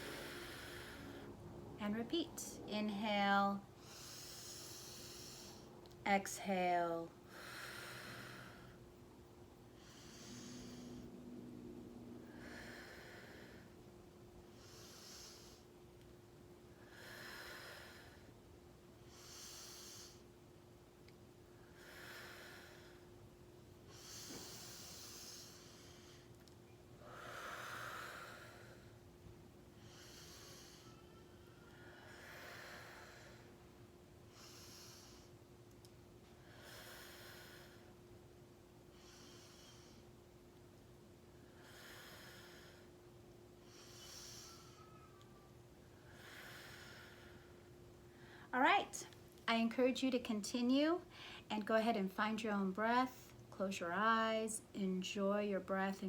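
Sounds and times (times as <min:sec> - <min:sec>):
person breathing deeply: 0:00.0 - 0:01.4, 0:09.7 - 0:11.4, 0:12.2 - 0:13.8, 0:27.0 - 0:29.0, 0:29.8 - 0:33.6
person breathing slowly: 0:00.0 - 0:01.4, 0:03.7 - 0:05.8, 0:07.2 - 0:08.8, 0:09.7 - 0:11.4, 0:12.2 - 0:13.9, 0:14.5 - 0:15.8, 0:16.8 - 0:18.4, 0:19.0 - 0:20.4, 0:21.6 - 0:23.2, 0:23.9 - 0:26.4, 0:27.0 - 0:29.1, 0:29.7 - 0:35.4, 0:36.2 - 0:38.1, 0:38.9 - 0:40.1, 0:41.4 - 0:48.6, 0:51.1 - 0:51.5
faint steady hum: 0:00.0 - 0:56.0.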